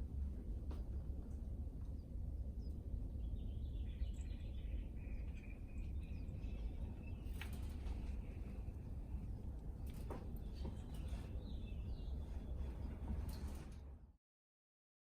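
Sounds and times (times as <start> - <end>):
faint bird chirping: 1.9 - 13.4.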